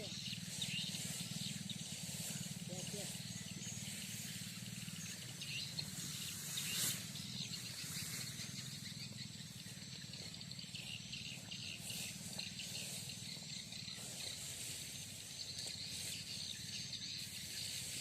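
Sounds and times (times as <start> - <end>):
high chirping: 0.0 - 18.0
small engine running: 0.0 - 18.0.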